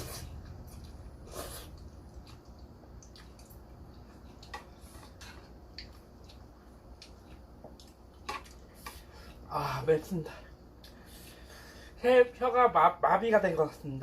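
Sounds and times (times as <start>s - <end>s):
wet chewing and mouth noises: 0.0s - 9.4s.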